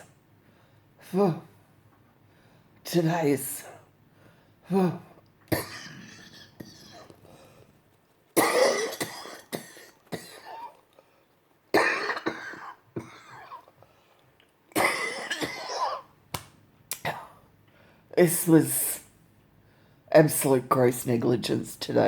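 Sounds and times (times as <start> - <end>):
woman clearing throat: 5.5 - 7.2
woman coughing hard: 5.5 - 7.2, 8.4 - 10.8, 11.7 - 13.7, 14.8 - 16.1.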